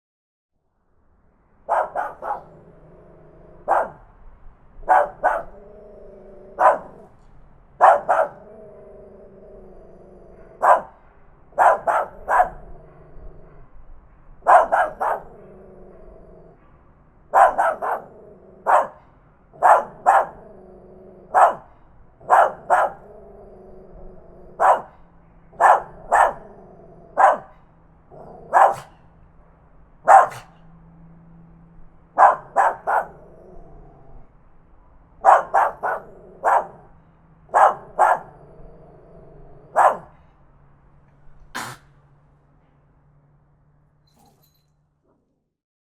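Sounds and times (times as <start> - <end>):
small dog barking: 1.7 - 2.8, 3.5 - 4.1, 4.8 - 7.1, 7.8 - 8.6, 10.5 - 12.8, 14.4 - 15.7, 17.3 - 19.0, 19.6 - 20.6, 21.2 - 29.0, 30.0 - 30.6, 32.2 - 33.4, 35.2 - 36.9, 37.5 - 38.6, 39.6 - 40.2.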